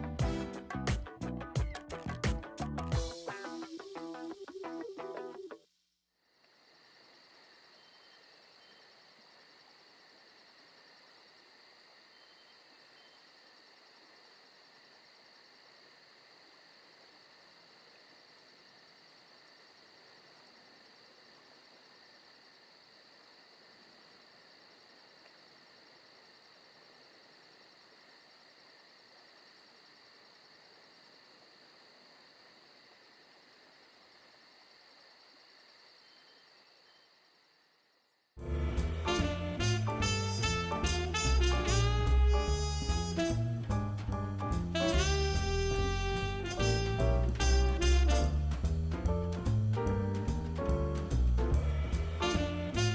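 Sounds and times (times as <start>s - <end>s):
crickets chirping: 3.3s - 43.4s.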